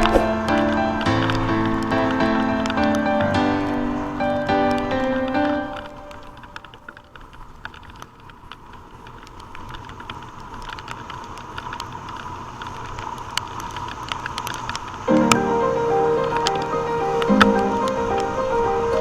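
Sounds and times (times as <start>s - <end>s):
small clicks and ticks: 4.6s - 19.0s.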